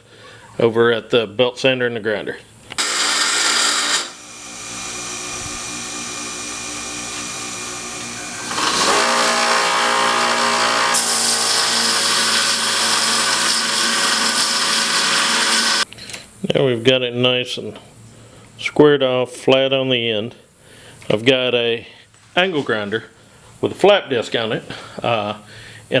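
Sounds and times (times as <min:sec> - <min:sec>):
grinder motor hum: 0:02.8 - 0:15.8
grinder grinding steel: 0:02.8 - 0:15.9.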